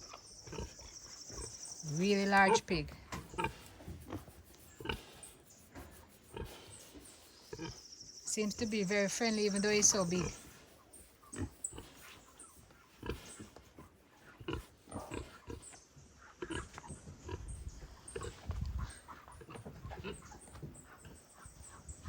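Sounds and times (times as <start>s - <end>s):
pig grunting: 13.0s - 15.7s.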